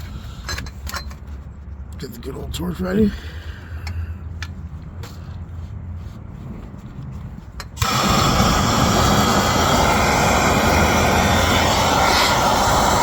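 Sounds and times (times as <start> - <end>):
gas torch lighting: 7.8 - 13.0
torch flame hissing: 7.8 - 13.0.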